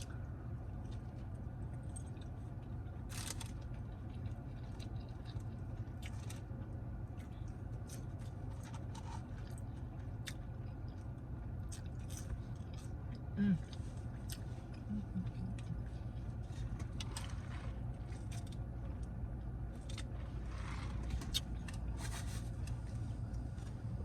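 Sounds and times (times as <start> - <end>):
steady low hum: 0.0 - 24.0
chewing with wet mouth clicks: 0.8 - 6.5, 7.1 - 17.4.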